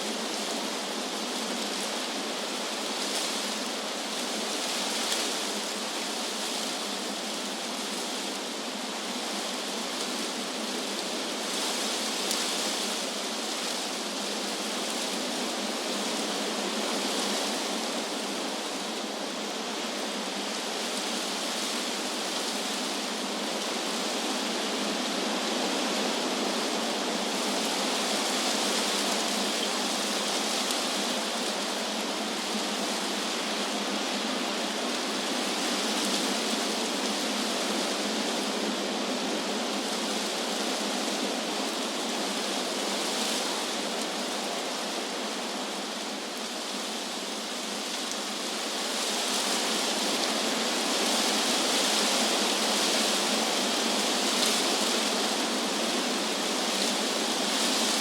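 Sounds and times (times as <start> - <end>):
wind rustling tree leaves: 0.0 - 58.0.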